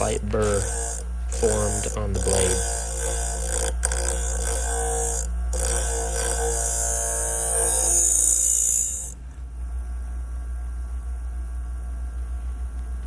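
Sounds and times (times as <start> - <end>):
blade grinding: 0.0 - 9.2
sharpening machine motor hum: 0.0 - 9.2.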